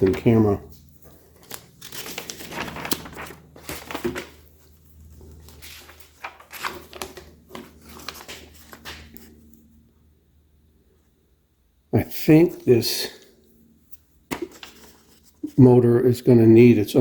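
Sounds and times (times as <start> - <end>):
packaging rustling and crinkling: 1.1 - 9.4.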